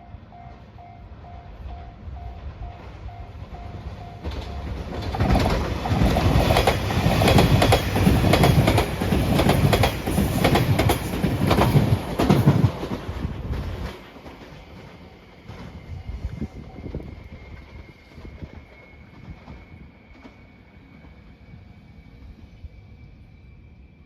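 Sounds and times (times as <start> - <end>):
train wheels clicking over rail joints: 3.5 - 16.3.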